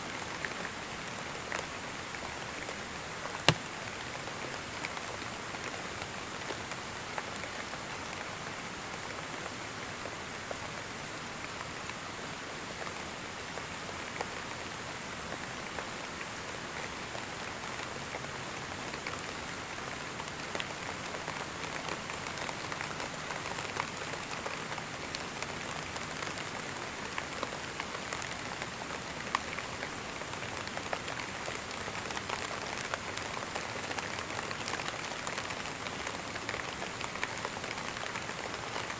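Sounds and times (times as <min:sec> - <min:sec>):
gentle rain falling: 0:00.0 - 0:38.9.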